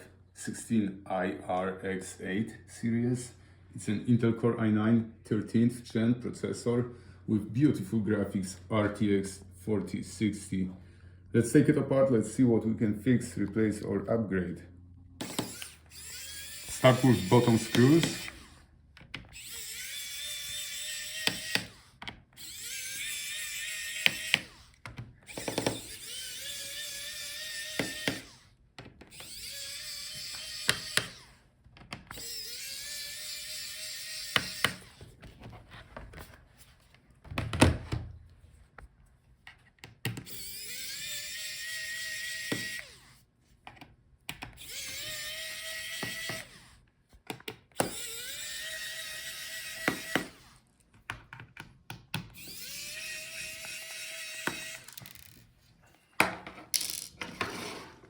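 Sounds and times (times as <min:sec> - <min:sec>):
electric screwdriver motor whine: 0:15.2 - 0:18.7, 0:19.3 - 0:31.4, 0:32.1 - 0:35.1, 0:40.2 - 0:43.2, 0:44.6 - 0:46.8, 0:47.8 - 0:50.6, 0:52.4 - 0:55.4
screwdriver bit clicking on screws: 0:15.2 - 0:35.0, 0:39.8 - 0:43.1, 0:43.7 - 0:50.5, 0:51.1 - 0:55.4.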